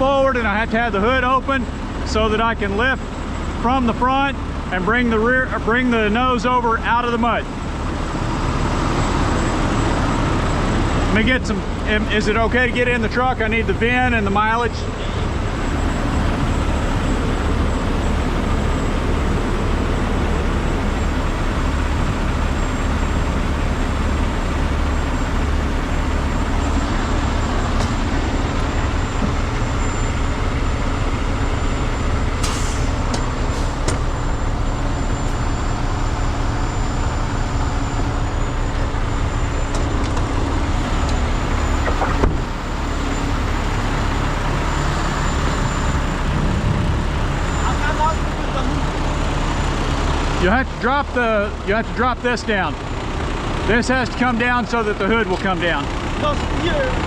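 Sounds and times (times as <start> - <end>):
diesel truck engine idling: 0.0 - 57.0.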